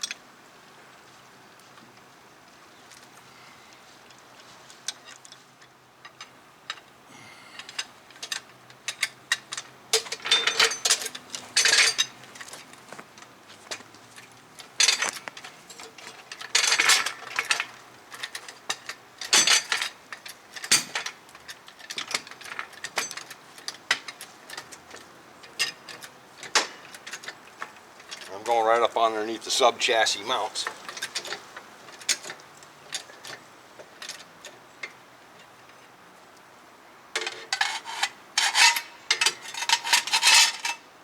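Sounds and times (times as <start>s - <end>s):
metal tools clinking: 7.6s - 12.7s, 13.7s - 33.4s, 37.2s - 40.8s.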